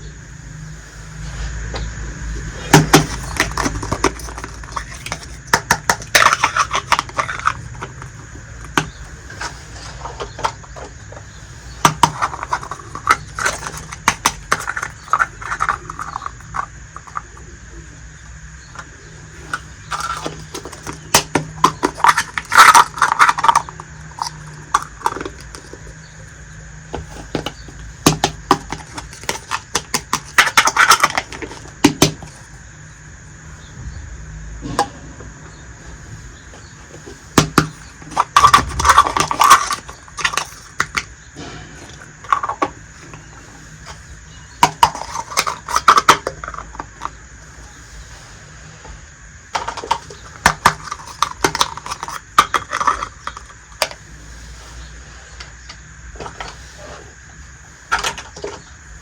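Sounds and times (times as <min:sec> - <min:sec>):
toy pieces clicking and clattering: 0:02.5 - 0:11.2, 0:11.8 - 0:17.5, 0:18.7 - 0:26.3, 0:26.9 - 0:32.6, 0:37.4 - 0:41.1, 0:41.8 - 0:43.2, 0:44.6 - 0:47.1, 0:49.5 - 0:54.0.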